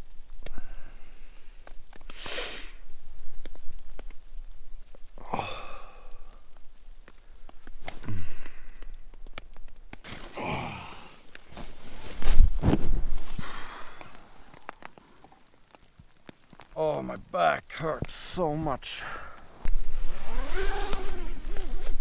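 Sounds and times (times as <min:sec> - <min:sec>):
rustling: 0:00.0 - 0:22.0.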